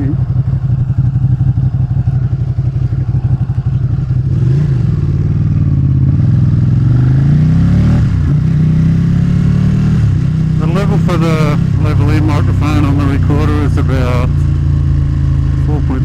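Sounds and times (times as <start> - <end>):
motorcycle engine revving: 0.0 - 16.0.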